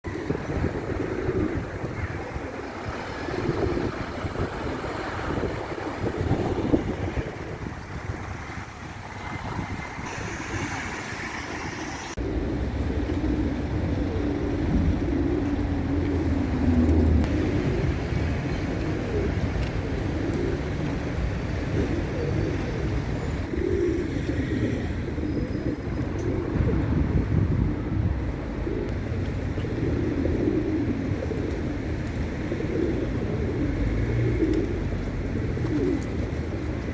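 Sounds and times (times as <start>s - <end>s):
pigeons cooing: 0.1s - 36.9s
steady low rumble: 5.4s - 22.7s.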